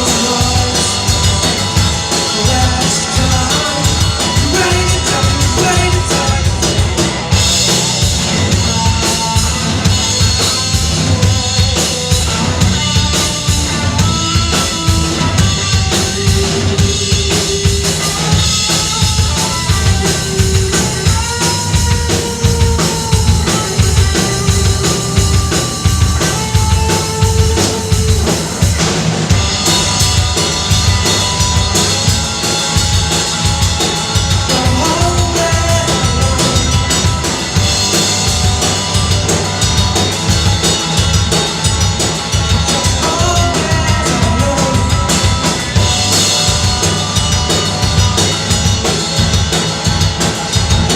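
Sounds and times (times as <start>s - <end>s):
drum kit beat: 0.0s - 50.9s.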